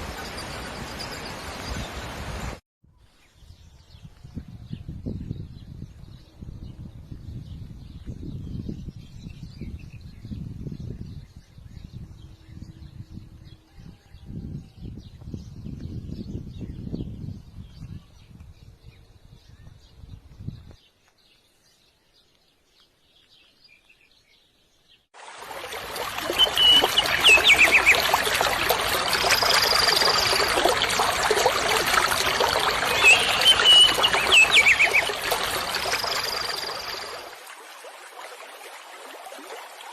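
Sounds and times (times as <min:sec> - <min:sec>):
flowing water rushing: 0:25.2 - 0:39.9
bird whistled notes and trill: 0:26.2 - 0:30.6, 0:32.6 - 0:37.2.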